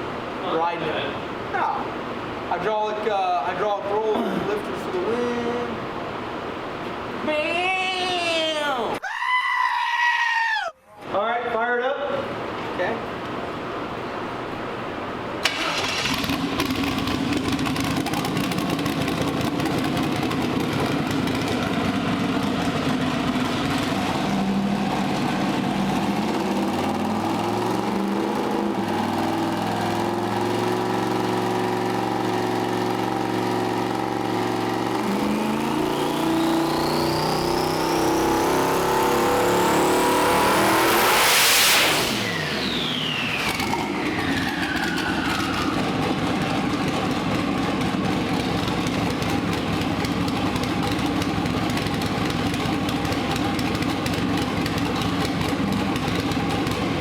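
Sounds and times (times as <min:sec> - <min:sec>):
car engine under load: 0:12.3 - 0:57.0
turbo whine: 0:20.4 - 0:47.2.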